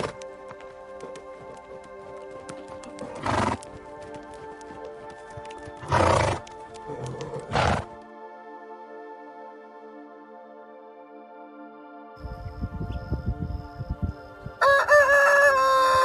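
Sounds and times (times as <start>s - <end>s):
hooves clip-clopping: 0.0s - 8.1s
background music: 0.0s - 16.0s.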